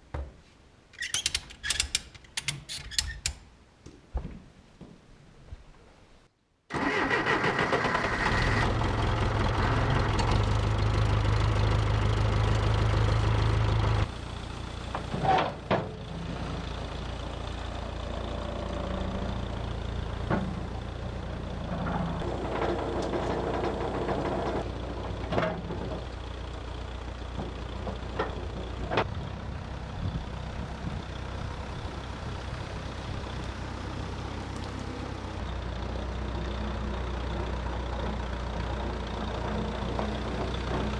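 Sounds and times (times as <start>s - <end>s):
vehicle engine idling: 8.3s - 40.9s.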